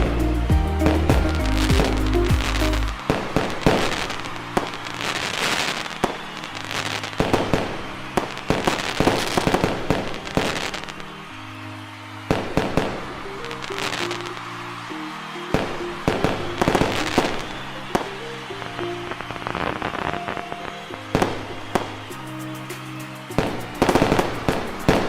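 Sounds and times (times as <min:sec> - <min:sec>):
music with steady bass line: 0:00.0 - 0:03.0
fireworks crackling: 0:00.0 - 0:14.5, 0:15.2 - 0:25.0.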